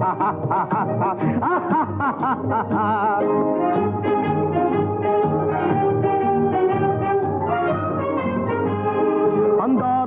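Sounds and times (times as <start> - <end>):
orchestra with brass playing: 3.3 - 10.0.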